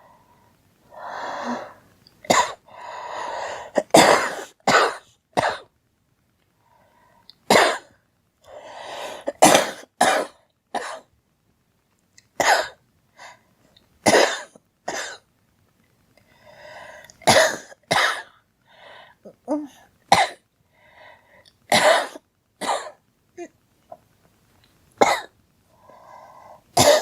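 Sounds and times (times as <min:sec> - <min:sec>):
girl coughing: 0:02.3 - 0:02.6, 0:03.8 - 0:05.6, 0:09.3 - 0:11.0, 0:19.6 - 0:20.4, 0:26.8 - 0:27.0.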